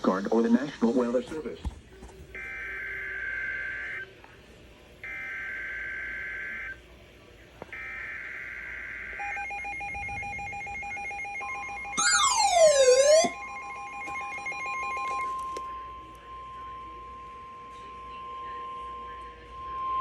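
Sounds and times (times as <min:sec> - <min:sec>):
loud sweeping alarm tone: 0:09.2 - 0:15.0
steady attention tone: 0:09.2 - 0:20.0
screeching digital data tones: 0:11.8 - 0:13.5.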